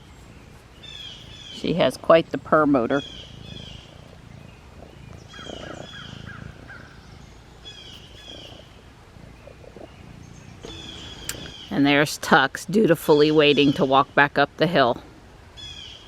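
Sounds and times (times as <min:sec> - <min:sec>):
bird chirping: 0:00.0 - 0:12.3
cat purring: 0:00.0 - 0:15.2.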